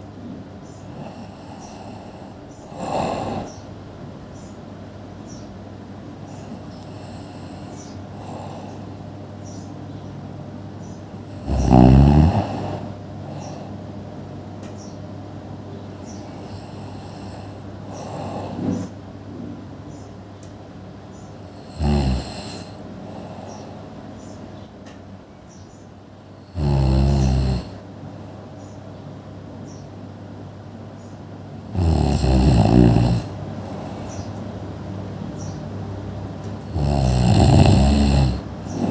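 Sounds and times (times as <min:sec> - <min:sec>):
quiet breathing: 0:00.6 - 0:03.8, 0:06.2 - 0:09.7, 0:11.1 - 0:14.3, 0:15.8 - 0:19.0, 0:21.4 - 0:24.4, 0:31.5 - 0:38.9
person snoring: 0:00.9 - 0:03.7, 0:06.3 - 0:09.0, 0:11.2 - 0:13.8, 0:16.0 - 0:18.9, 0:21.4 - 0:23.9, 0:26.3 - 0:27.8, 0:31.6 - 0:34.4, 0:36.4 - 0:38.9.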